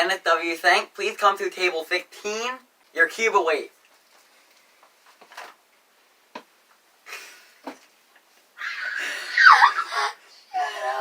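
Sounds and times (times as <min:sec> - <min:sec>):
breaths: 0:08.6 - 0:11.0
person laughing breathily: 0:08.6 - 0:11.0.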